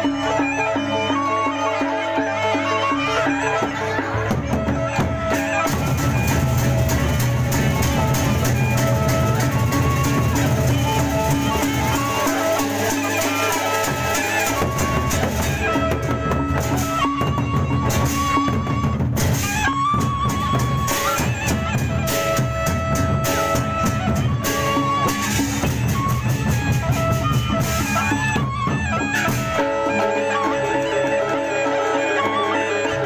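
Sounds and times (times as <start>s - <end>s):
fast drum strikes: 4.3s - 29.9s.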